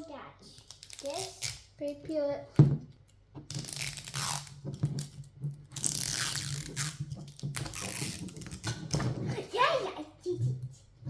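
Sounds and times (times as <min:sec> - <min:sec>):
plastic seal crinkling and tearing: 0:03.5 - 0:04.6.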